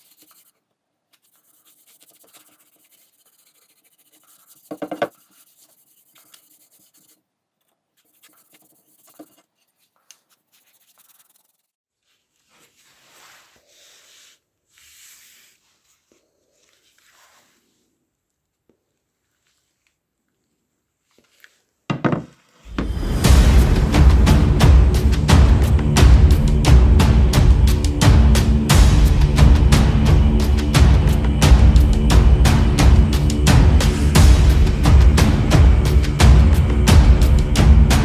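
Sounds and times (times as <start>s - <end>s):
scratching and rubbing on hatchet: 0.0s - 0.6s, 1.2s - 11.7s
sharp knock: 21.9s - 23.4s.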